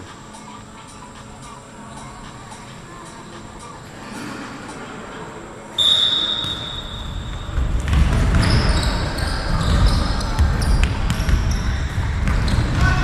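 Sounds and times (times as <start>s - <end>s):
referee's whistle blast: 5.8s - 7.5s.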